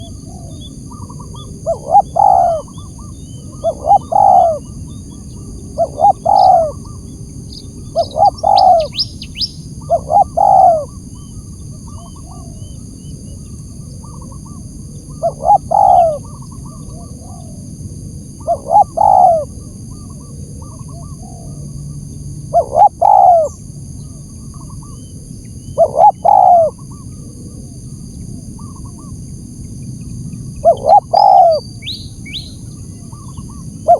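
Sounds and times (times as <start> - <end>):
dove cooing: 0.0 - 11.3, 14.0 - 17.7, 18.4 - 21.7, 22.5 - 23.6, 25.7 - 26.9, 30.6 - 33.9.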